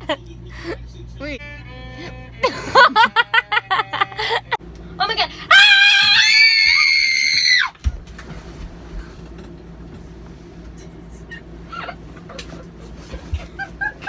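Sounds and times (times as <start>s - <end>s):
low steady hum: 0.0s - 14.0s
person screaming: 5.5s - 7.7s.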